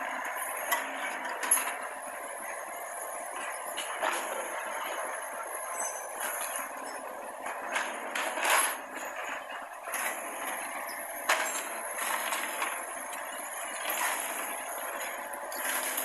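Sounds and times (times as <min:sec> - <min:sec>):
excavator engine running: 0:00.0 - 0:16.0.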